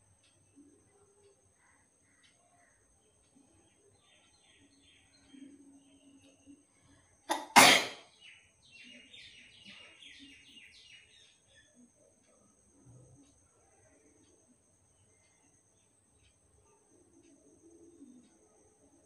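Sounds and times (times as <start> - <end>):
birds chirping: 0.0 - 18.6
person sneezing: 7.3 - 8.0.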